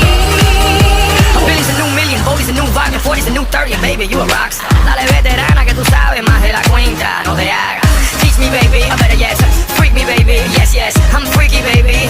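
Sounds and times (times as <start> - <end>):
electronic dance music: 0.0 - 12.0.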